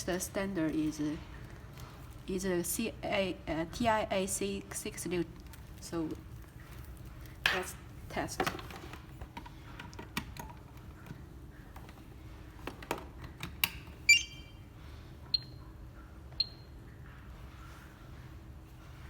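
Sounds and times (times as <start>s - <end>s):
loud electronic beep: 14.1s - 14.6s
short high beeps: 14.1s - 14.6s.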